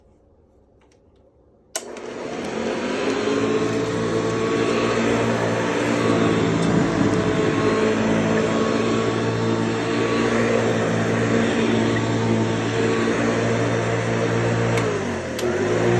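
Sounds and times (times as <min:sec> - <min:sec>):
vacuum cleaner switch click: 0:01.8 - 0:05.0, 0:14.7 - 0:15.7
vacuum cleaner motor running: 0:01.8 - 0:15.9.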